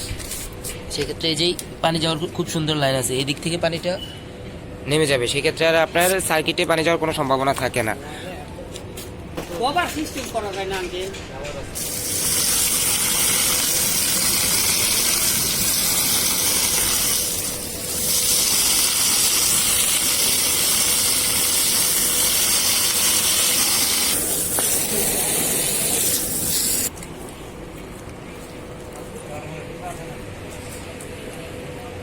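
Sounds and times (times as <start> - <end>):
water spray jet hissing: 11.8 - 26.9.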